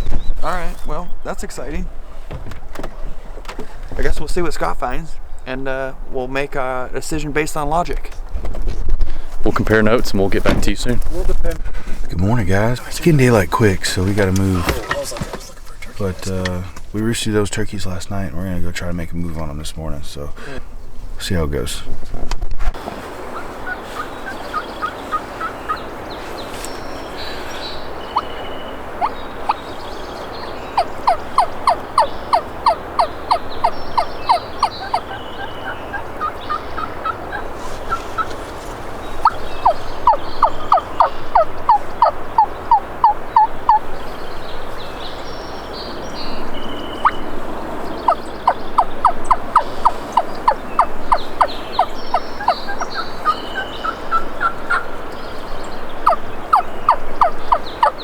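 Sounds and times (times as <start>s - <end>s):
turkeys calling: 11.8s - 21.7s, 22.8s - 58.0s
short high bird calls: 22.8s - 58.0s.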